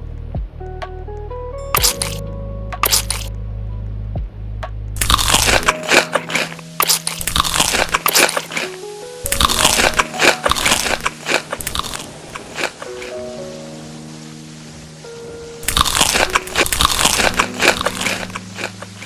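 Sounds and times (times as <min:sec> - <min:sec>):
background music: 0:00.0 - 0:19.0
crunchy food chewing: 0:01.8 - 0:02.2, 0:02.8 - 0:03.3, 0:05.0 - 0:13.2, 0:15.6 - 0:19.0.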